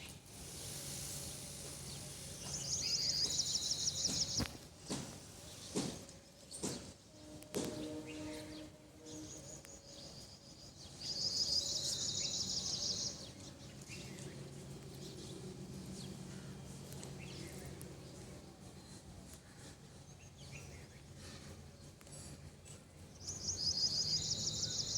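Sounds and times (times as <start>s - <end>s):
outdoor background noise: 0.0s - 24.9s
steady low hum: 13.1s - 23.5s.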